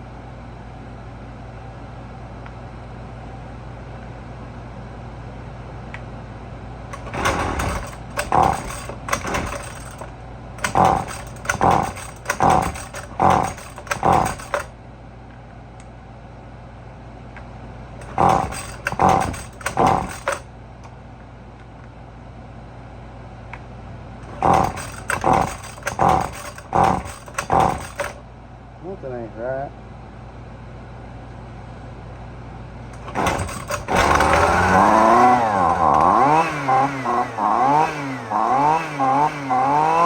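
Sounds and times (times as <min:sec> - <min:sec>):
string trimmer pull-cord cranking: 0:06.9 - 0:14.7, 0:18.0 - 0:20.5, 0:24.2 - 0:28.2, 0:32.9 - 0:40.0.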